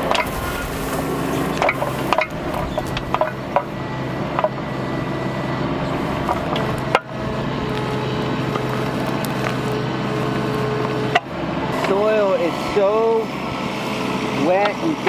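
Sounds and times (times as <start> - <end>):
bucket knocks and clanks: 0.0 - 3.8
diesel engine running: 0.0 - 15.0.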